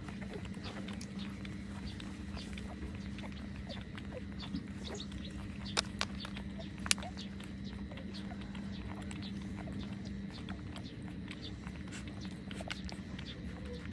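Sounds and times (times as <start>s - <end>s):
sharp clicks: 0.0s - 13.4s
puppies squeaking: 0.0s - 13.9s
steady low hum: 0.0s - 13.9s
suckling clicks: 3.8s - 8.3s.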